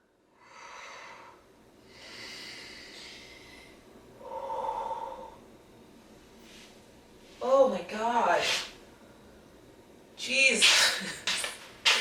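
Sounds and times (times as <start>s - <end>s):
woman breathing heavily: 0.4s - 5.6s.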